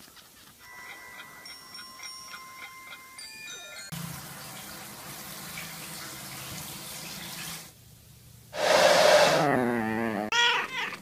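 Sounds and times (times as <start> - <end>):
steady hiss: 8.5 - 9.5
loud rushing hiss: 8.5 - 9.6
cat yowling: 9.5 - 11.0.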